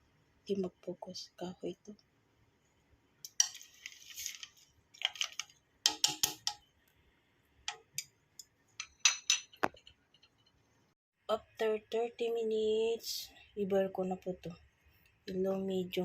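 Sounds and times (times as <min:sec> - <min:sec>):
dried herbs rustling: 0:03.5 - 0:05.5.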